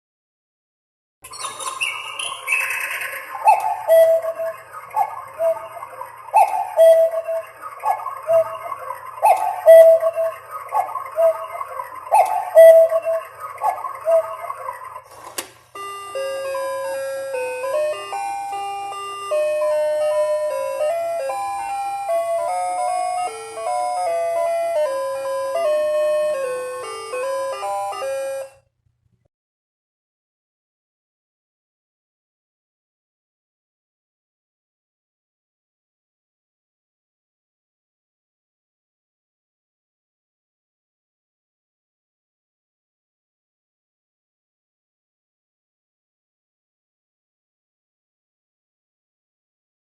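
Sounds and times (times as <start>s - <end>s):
cuckoo clock calls: 1.2s - 28.6s
tinkling electronic melody: 1.3s - 10.5s, 15.8s - 28.6s.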